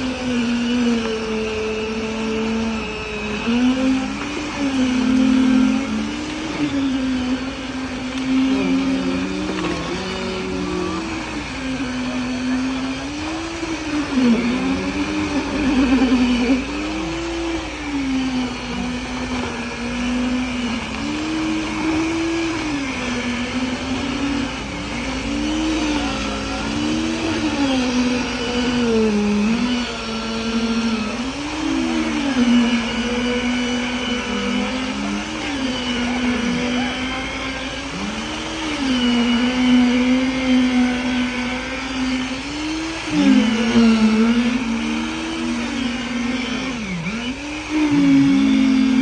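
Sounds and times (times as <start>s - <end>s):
engine pitch rising and falling: 2.6s - 40.1s.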